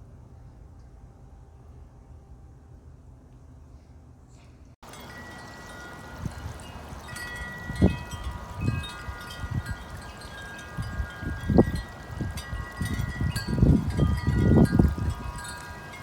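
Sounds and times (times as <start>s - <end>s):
wind buffeting microphone: 4.8s - 16.0s
wind chimes ringing: 4.8s - 16.0s.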